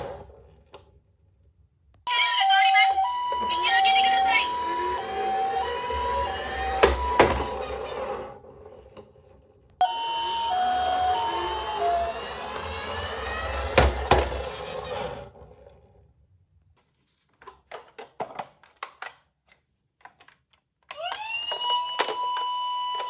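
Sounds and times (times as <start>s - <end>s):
toy two-tone siren: 2.1s - 7.8s, 9.8s - 15.1s, 20.9s - 23.0s.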